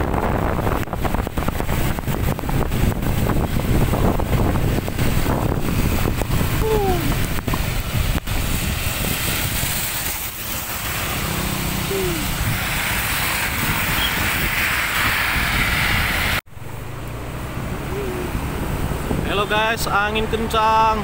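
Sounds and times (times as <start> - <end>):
storm wind buffeting microphone: 0.0 - 16.4, 18.2 - 20.3
road traffic: 0.0 - 21.0
heavy rain hissing: 1.7 - 16.4.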